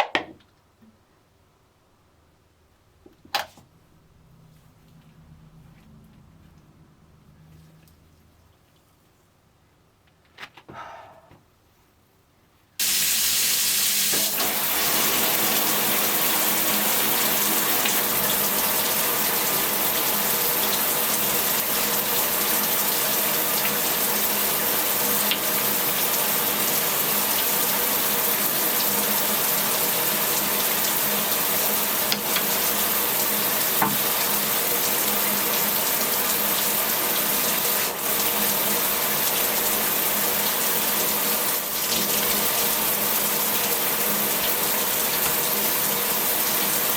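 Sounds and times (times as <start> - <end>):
running water: 12.8 - 46.9.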